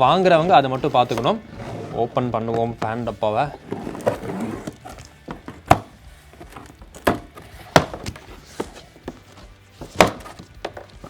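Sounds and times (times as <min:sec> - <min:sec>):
cardboard carton knocks and thuds: 0:02.4 - 0:11.0.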